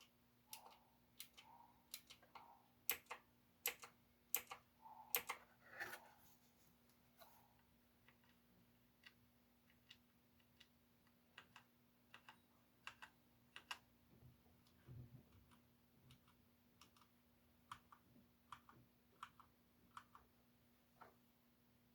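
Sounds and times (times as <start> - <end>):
keyboard switches clicking: 0.0 - 5.4.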